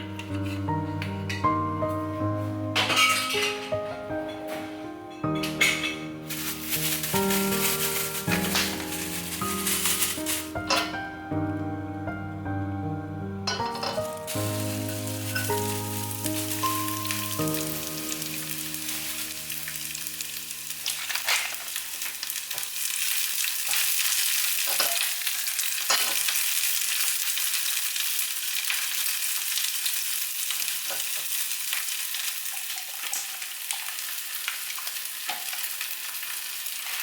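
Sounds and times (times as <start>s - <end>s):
background music: 0.0s - 21.2s
food sizzling in frying pan: 5.6s - 11.0s, 13.5s - 37.0s.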